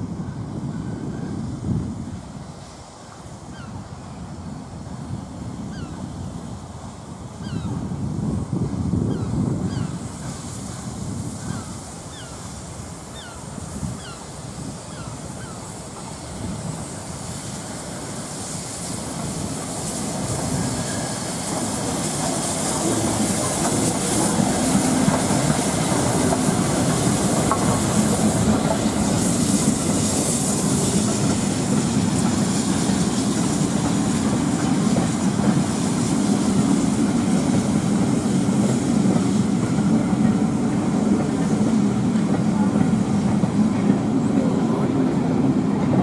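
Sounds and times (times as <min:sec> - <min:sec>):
steam train running on rails: 0:00.0 - 0:46.0
wheels clacking over rail joints: 0:19.1 - 0:46.0.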